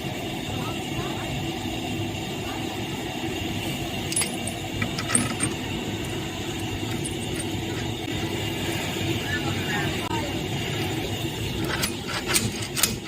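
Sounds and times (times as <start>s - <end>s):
steady mechanical hum: 0.0s - 13.0s
metallic clinks of tools: 4.0s - 5.8s, 6.6s - 8.0s.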